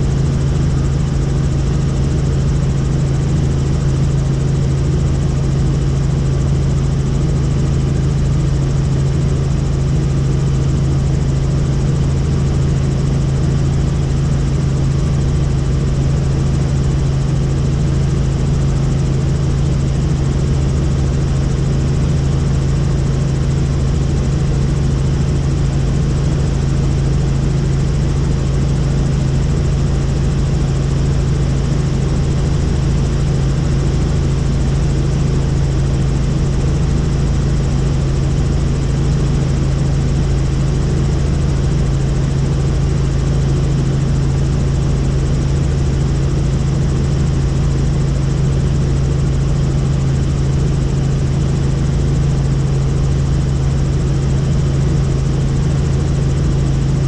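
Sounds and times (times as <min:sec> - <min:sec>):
helicopter turbine and rotors drone: 0:00.0 - 0:57.0.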